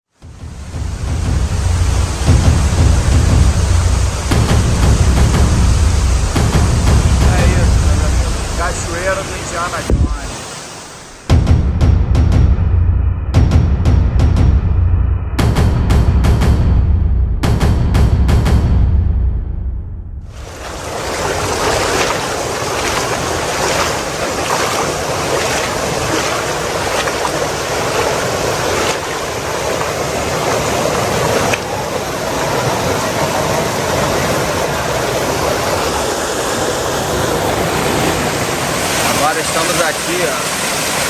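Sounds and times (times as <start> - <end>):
river and waterfall rushing: 0.2 - 11.4, 20.3 - 41.0.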